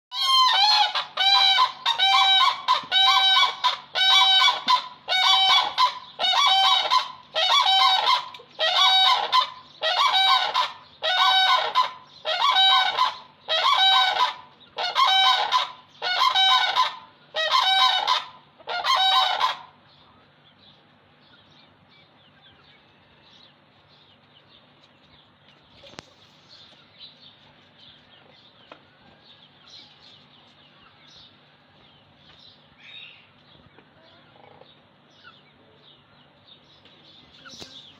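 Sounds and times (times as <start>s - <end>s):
crane honking calls: 0.1s - 19.8s.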